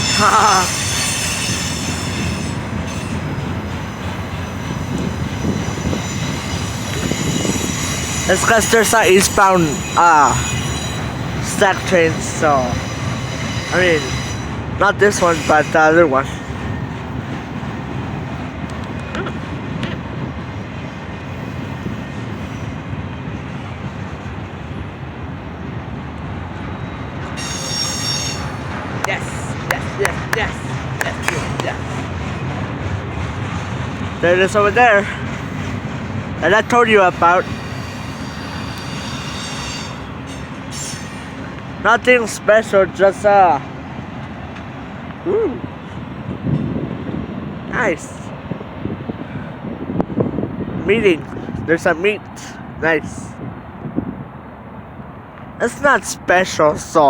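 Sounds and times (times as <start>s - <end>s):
high-pitched wheel squeal: 0.0s - 16.9s, 26.9s - 29.5s, 36.4s - 41.6s
train wheels rumbling on rails: 0.0s - 57.0s.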